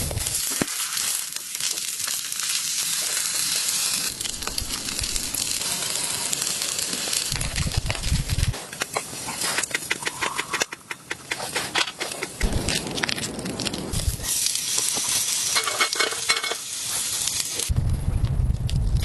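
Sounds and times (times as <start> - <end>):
sizzling hiss: 0.0 - 10.0, 12.4 - 17.8
crackling and clicking: 0.0 - 19.0
low rumble: 4.1 - 5.9, 7.2 - 8.5, 12.4 - 14.4, 17.7 - 19.0.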